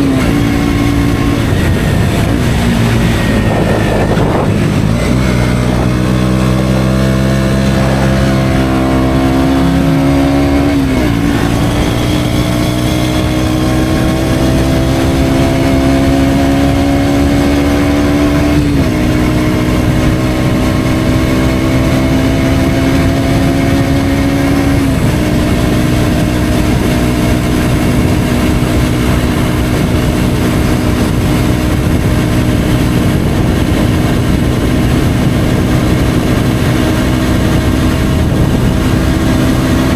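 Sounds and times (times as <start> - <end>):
motorcycle engine shifting gears: 0.0 - 39.9
rush of air: 0.1 - 6.4.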